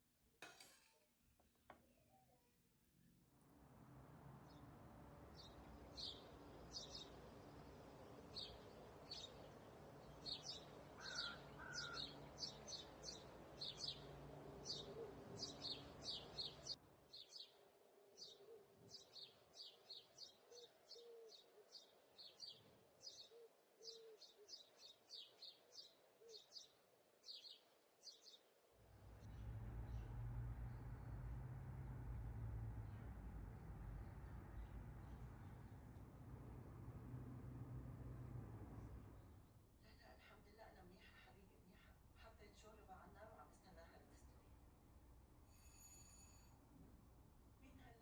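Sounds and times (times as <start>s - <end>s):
small birds chirping: 4.4s - 17.6s, 18.2s - 31.1s
faint low hum: 28.8s - 48.0s.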